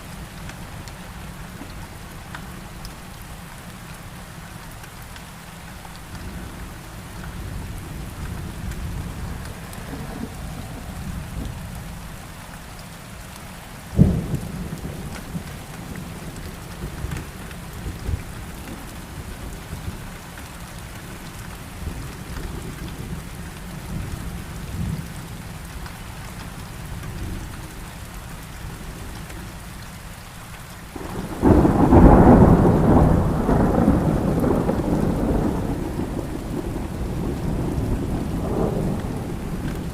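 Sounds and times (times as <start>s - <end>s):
steady rain: 0.0s - 39.9s
rolling thunder: 6.3s - 12.2s, 13.9s - 20.0s, 31.0s - 39.9s
sharp thunder crack: 31.1s - 39.9s.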